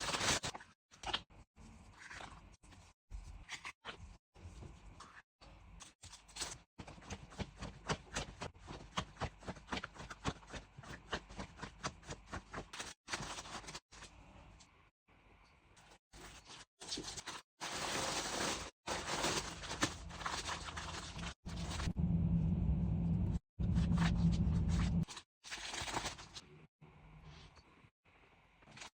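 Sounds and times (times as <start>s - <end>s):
packaging rustling and scraping: 0.0s - 0.6s, 12.8s - 13.8s, 16.2s - 21.9s.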